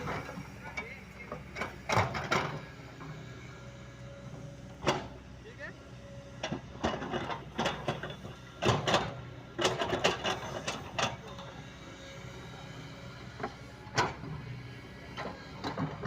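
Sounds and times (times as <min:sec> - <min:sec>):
excavator engine humming: 0:00.0 - 0:16.0
metal clanks and scrapes: 0:06.5 - 0:11.5.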